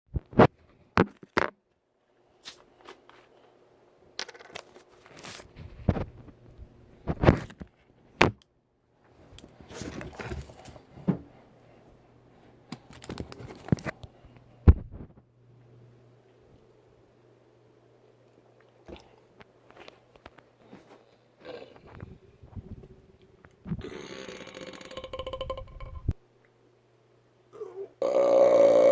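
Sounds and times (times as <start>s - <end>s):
faint steady hum: 0.2s - 28.9s
crinkling and rustling: 4.2s - 8.0s, 9.1s - 11.3s, 12.7s - 14.1s.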